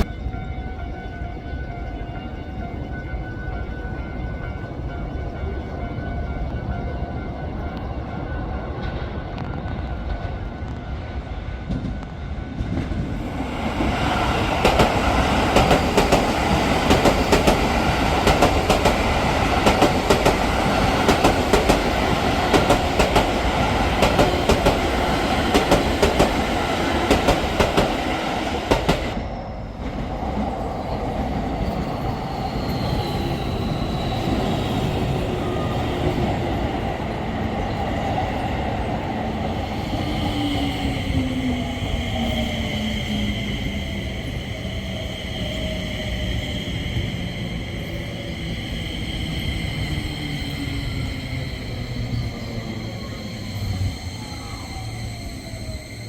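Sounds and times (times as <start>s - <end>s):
electric train running: 11.6s - 56.0s.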